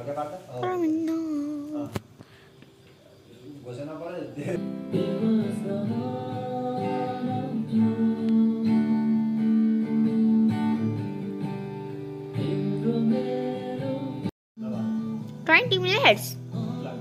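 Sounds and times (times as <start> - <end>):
song with acoustic guitar strumming: 4.6 - 17.0.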